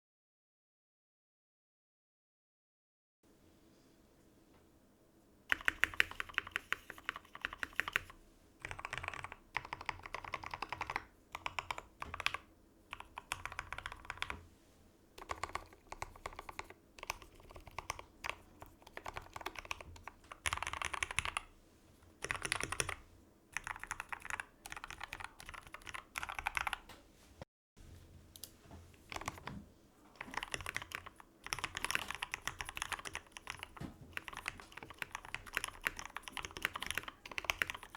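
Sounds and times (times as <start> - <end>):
mechanical keyboard typing: 5.5 - 14.4, 15.2 - 21.5, 22.2 - 26.9, 29.1 - 29.5, 30.1 - 37.9.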